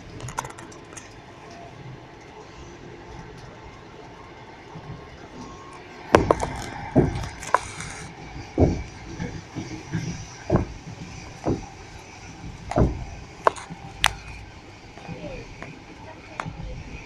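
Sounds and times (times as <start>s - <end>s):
train wheels knocking on rail joints: 6.0s - 17.0s.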